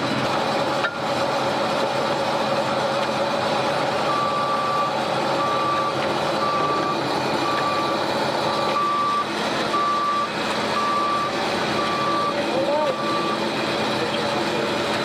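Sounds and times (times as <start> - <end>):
machine engine running: 0.0 - 15.0
backup alarm beeping: 4.1 - 13.4.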